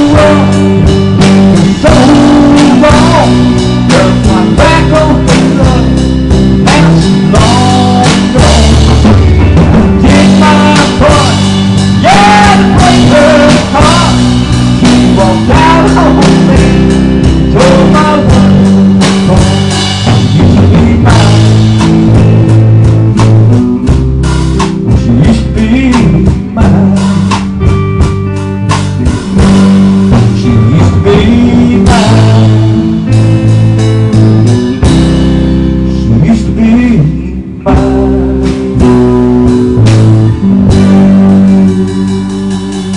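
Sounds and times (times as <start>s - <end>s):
band playing instrumental music: 0.0s - 42.9s.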